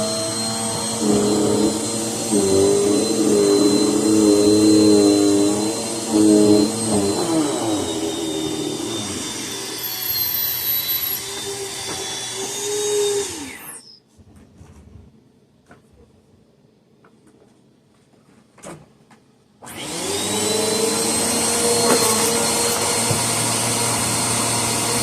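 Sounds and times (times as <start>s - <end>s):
vacuum cleaner running: 0.0s - 13.9s, 19.6s - 25.0s.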